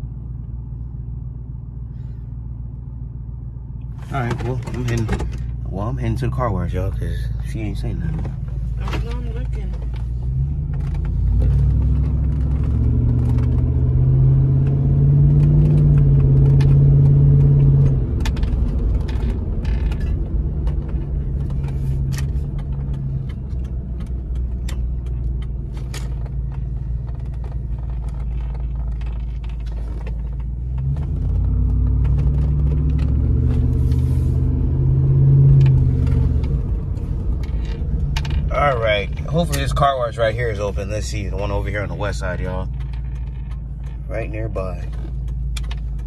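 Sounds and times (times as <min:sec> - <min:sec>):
truck engine and loud exhaust: 0:00.0 - 0:46.0
clicks and rattles in cab: 0:03.9 - 0:06.2, 0:14.6 - 0:33.7, 0:35.4 - 0:46.0.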